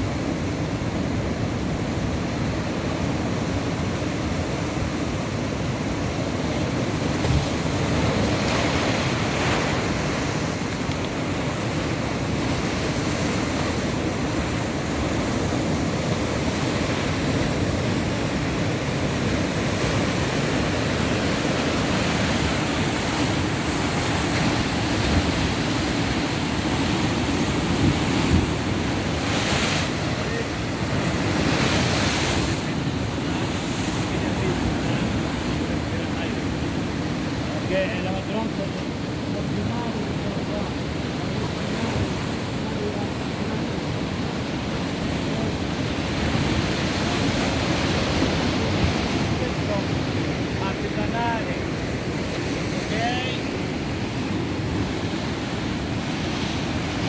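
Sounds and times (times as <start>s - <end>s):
heavy surf breaking: 0.0s - 57.0s
wind on microphone: 6.3s - 36.4s.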